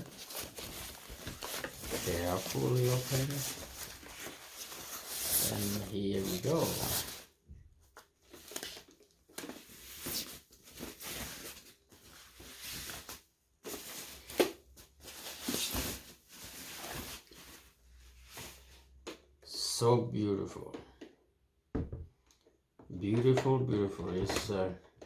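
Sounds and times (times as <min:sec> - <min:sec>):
packaging rustling and tearing: 0:00.0 - 0:07.4, 0:08.2 - 0:18.6.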